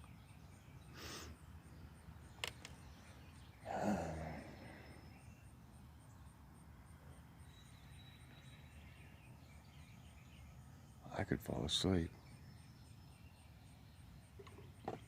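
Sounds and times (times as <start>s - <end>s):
faint outdoor background: 0.0s - 15.0s
man sighing: 3.6s - 5.0s.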